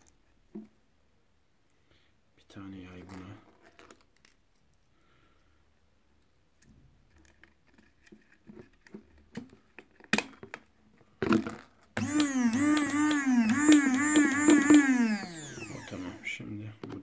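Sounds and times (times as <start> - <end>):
plastic parts clicking and tapping: 7.1 - 16.0.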